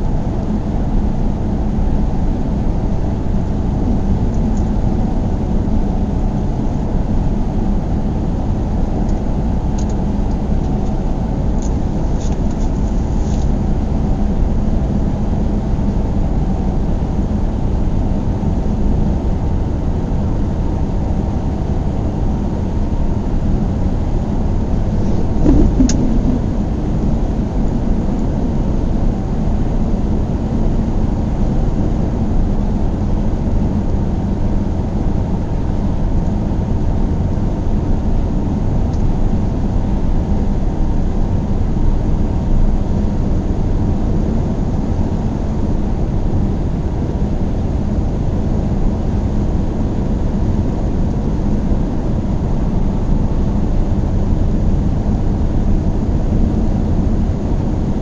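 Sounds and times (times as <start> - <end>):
car driving: 24.9 - 27.7.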